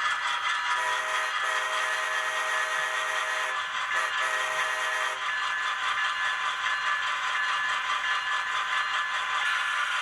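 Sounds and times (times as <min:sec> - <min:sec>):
model locomotive horn: 0:00.7 - 0:05.2.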